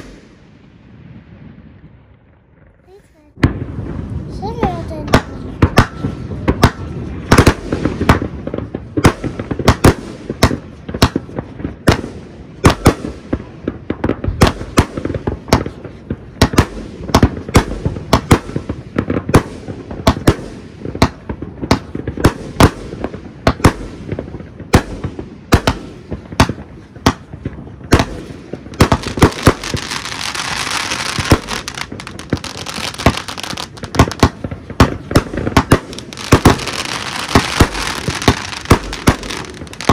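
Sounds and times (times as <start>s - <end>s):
fireworks bangs: 0.0s - 39.9s
crackling hiss: 28.6s - 34.4s.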